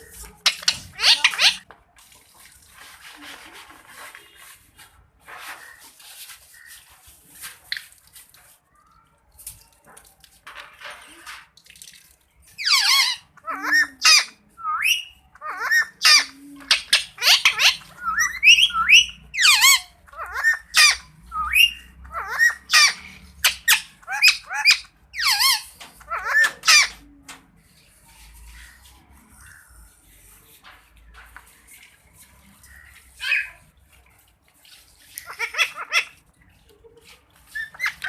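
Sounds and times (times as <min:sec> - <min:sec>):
parrot squawking: 0:00.4 - 0:01.6, 0:12.6 - 0:27.0, 0:33.2 - 0:33.6, 0:35.2 - 0:36.2, 0:37.5 - 0:38.0.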